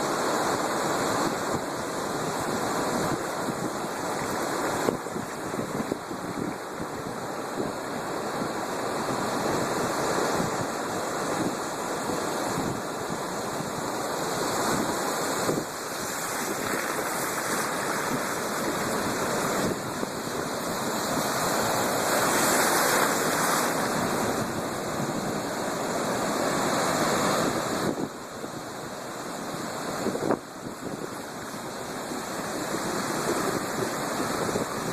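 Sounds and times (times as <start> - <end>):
waves breaking surf: 0.0 - 34.9
wind buffeting microphone: 1.4 - 10.8.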